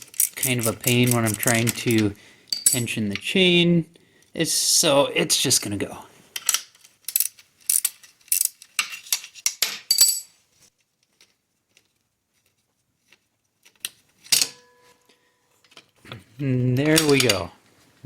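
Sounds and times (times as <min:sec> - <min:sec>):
metal tools clinking: 0:00.0 - 0:03.2, 0:06.4 - 0:10.4.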